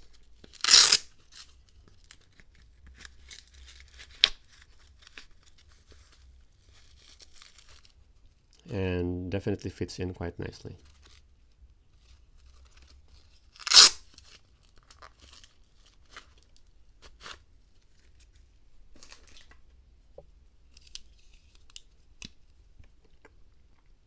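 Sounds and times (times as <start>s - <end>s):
hook and loop flap ripping: 0.6s - 1.0s, 13.6s - 14.0s
soft rustles and light clicks: 1.2s - 8.6s, 10.7s - 24.0s.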